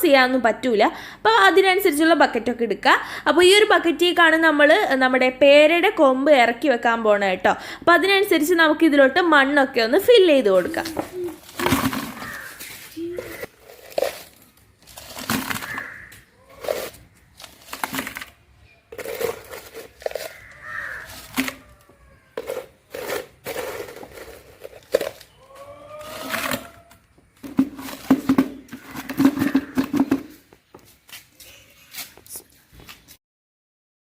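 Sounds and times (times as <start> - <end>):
soil scooped into a bucket: 10.8 - 18.3, 22.4 - 25.3.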